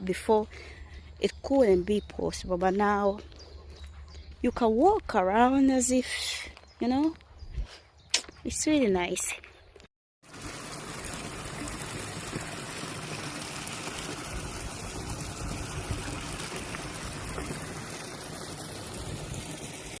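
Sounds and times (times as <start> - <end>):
flowing water rushing: 10.2 - 20.0.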